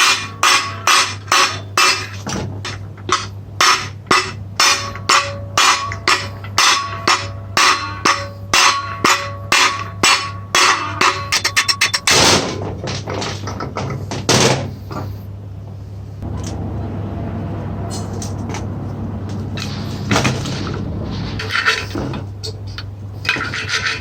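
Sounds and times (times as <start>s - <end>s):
hammer striking metal: 0.0s - 12.7s.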